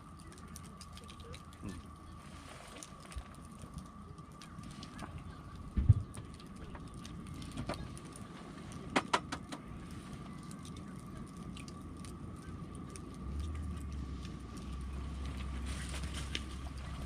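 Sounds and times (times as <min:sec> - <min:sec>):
campfire crackling and popping: 0:00.0 - 0:17.0.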